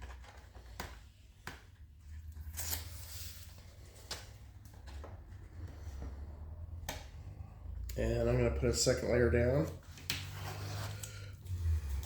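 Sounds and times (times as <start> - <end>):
tape rustling: 0.0 - 7.2.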